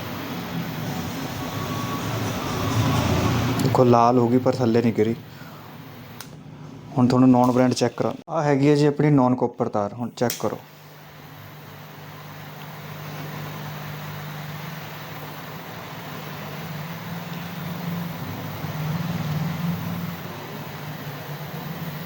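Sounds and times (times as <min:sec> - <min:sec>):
gas flame hissing: 0:00.0 - 0:08.8, 0:10.0 - 0:22.0
low hum: 0:00.4 - 0:06.9.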